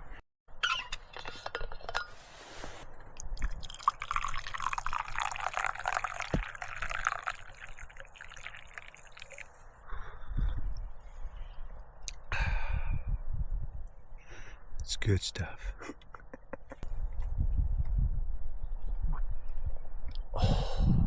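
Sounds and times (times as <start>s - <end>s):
water pouring into a cup: 3.2s - 9.8s.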